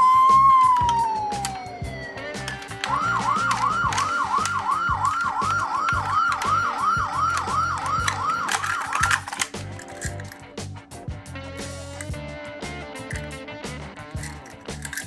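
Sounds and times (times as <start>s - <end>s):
toy siren wailing: 0.0s - 9.5s
sharp clicks: 2.4s - 10.4s.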